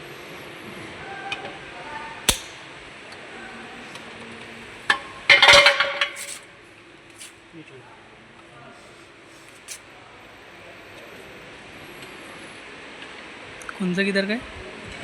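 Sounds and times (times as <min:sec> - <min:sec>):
metal on metal clatter: 0:02.3 - 0:02.6, 0:05.3 - 0:06.4
metal parts knocking and clinking: 0:05.4 - 0:06.4.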